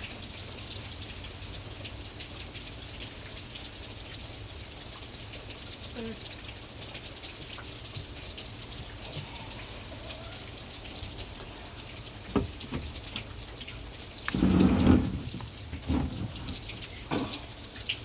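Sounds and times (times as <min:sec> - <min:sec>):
heavy rain pouring: 0:00.0 - 0:18.0
knocks: 0:12.3 - 0:13.0.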